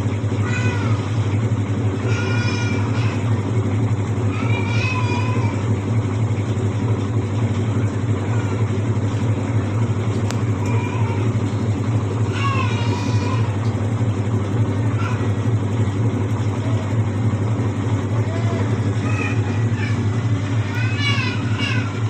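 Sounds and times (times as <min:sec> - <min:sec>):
washing machine spinning: 0:00.0 - 0:22.0.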